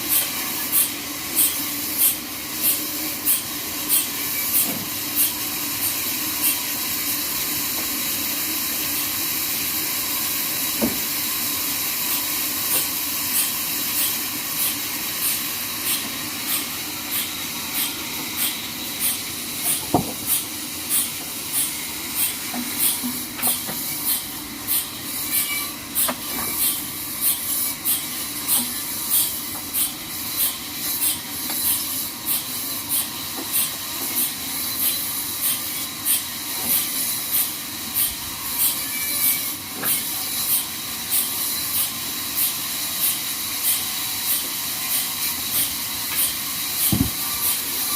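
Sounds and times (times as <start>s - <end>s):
band saw blade cutting log: 0.0s - 47.9s.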